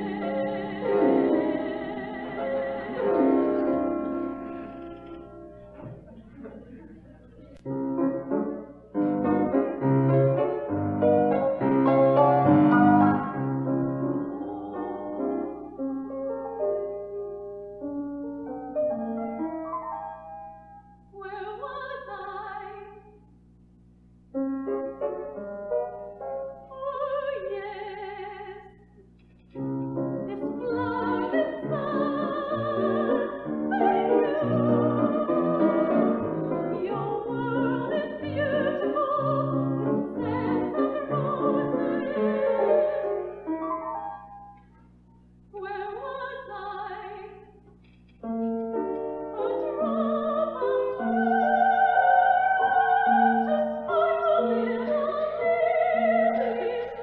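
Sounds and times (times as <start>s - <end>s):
woman singing with vibrato: 0.0s - 4.4s, 10.6s - 15.8s, 21.2s - 23.1s, 26.6s - 28.7s, 30.2s - 43.5s, 45.6s - 47.5s, 49.3s - 57.0s
piano accompaniment: 0.0s - 6.3s, 7.6s - 21.1s, 24.3s - 27.5s, 29.6s - 44.8s, 48.2s - 57.0s.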